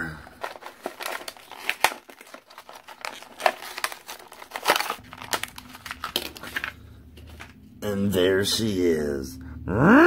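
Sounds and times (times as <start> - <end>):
toy packaging crinkling: 0.0 - 7.6.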